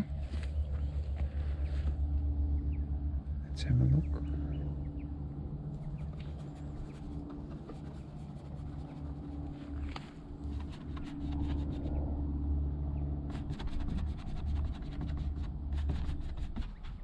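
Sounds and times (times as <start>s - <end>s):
steady low hum: 0.0s - 17.0s
brush scratching and dabbing canvas: 5.7s - 12.1s, 13.3s - 17.0s.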